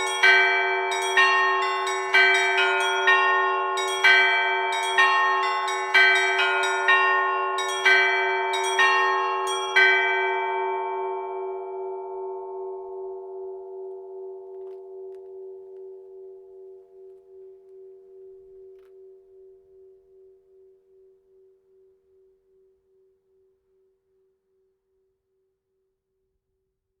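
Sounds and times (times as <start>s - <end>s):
church bells ringing: 0.0s - 14.5s
low pulsing bell hum: 0.0s - 22.9s.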